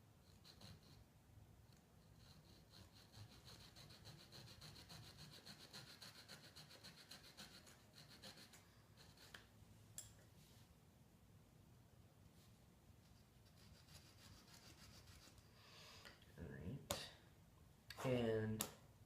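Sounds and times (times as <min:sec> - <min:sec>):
hand saw cutting wood: 0:02.2 - 0:09.2.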